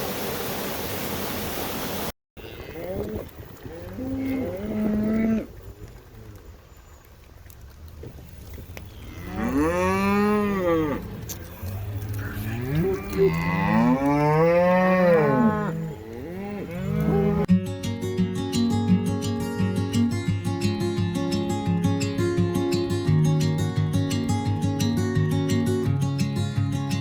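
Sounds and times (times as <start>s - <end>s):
cattle mooing: 2.6s - 5.5s, 9.0s - 17.5s
guitar music: 16.6s - 27.0s.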